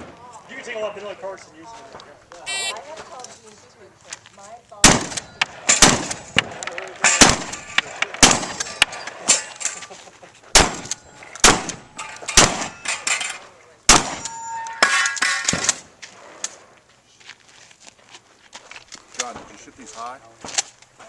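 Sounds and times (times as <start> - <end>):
shotgun shots: 4.8 - 9.4, 10.5 - 12.8, 13.9 - 14.4
steel targets clanging: 5.1 - 10.0, 10.6 - 13.5, 14.1 - 15.8.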